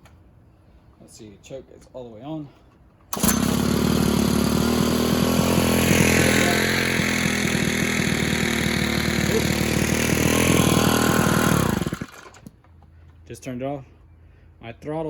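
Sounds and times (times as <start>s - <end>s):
trimmer engine running: 3.2s - 12.5s.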